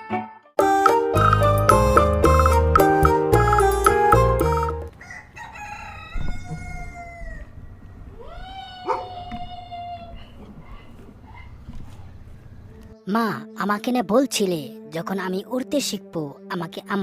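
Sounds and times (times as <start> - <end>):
cartoon music jingle: 0.6 - 4.9
rooster crowing: 4.9 - 10.3.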